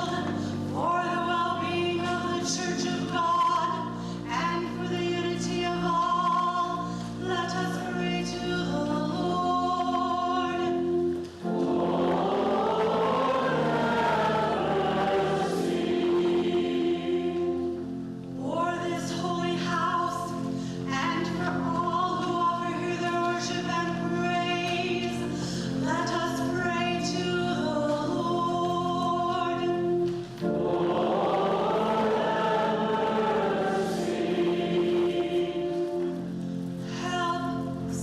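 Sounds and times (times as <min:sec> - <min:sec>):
voices singing a hymn: 0:00.0 - 0:38.0
held accompaniment notes: 0:07.1 - 0:18.5, 0:26.4 - 0:38.0.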